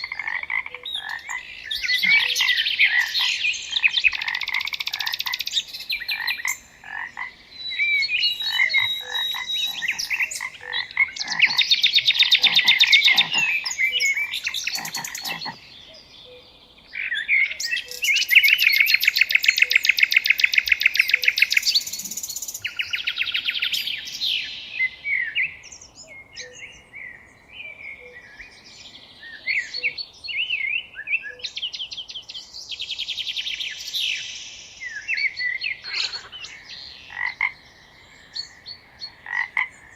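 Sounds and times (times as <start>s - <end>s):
frogs croaking: 0.0s - 25.1s, 35.4s - 39.9s
birds chirping: 0.0s - 39.9s.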